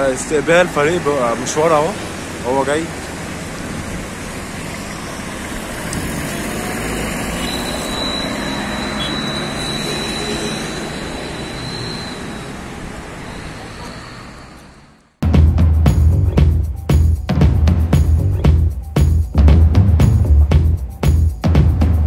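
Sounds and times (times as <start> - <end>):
wind noise on microphone: 5.6 - 6.8.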